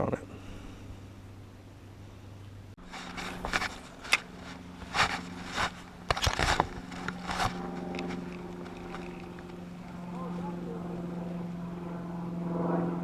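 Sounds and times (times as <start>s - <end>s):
scraping crackling noises: 2.8s - 10.3s.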